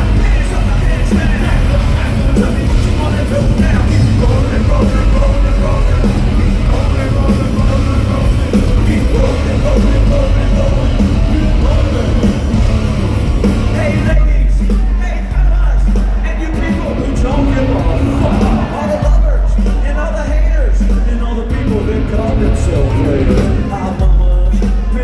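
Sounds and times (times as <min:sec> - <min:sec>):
metal band playing live: 0:00.0 - 0:25.0
shouted and sung vocals: 0:00.0 - 0:25.0.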